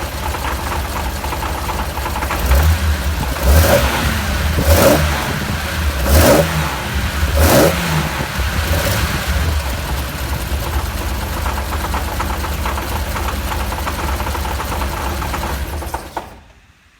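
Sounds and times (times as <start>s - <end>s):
car engine revving: 0.0s - 16.2s
rapid engine ticking: 0.0s - 16.4s
engine idling: 0.0s - 16.9s.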